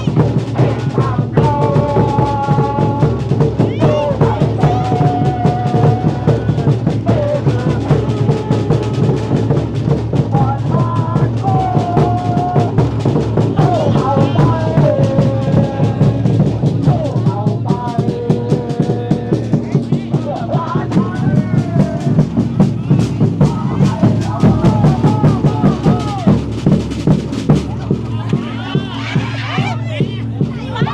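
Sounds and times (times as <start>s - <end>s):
crowd singing a chant: 0.0s - 30.9s
pounding drumbeat: 0.0s - 30.9s.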